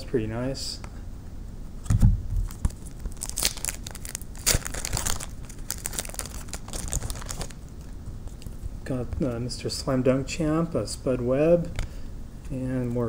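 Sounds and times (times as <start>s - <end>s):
cards rustling: 2.4s - 7.6s
wrapper crinkling and tearing: 2.4s - 7.8s.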